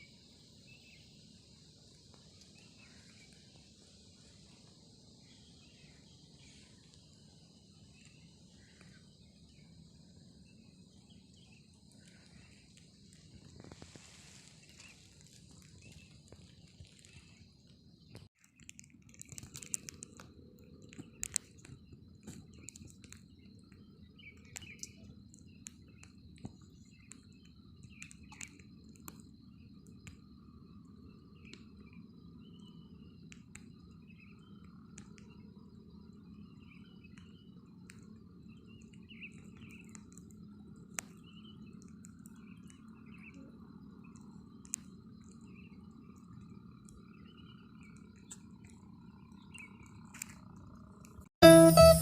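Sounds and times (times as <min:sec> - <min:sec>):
high insect drone: 0:00.0 - 0:18.2, 0:19.2 - 0:52.0
small birds chirping: 0:00.0 - 0:52.0
steady thin high tone: 0:51.4 - 0:52.0.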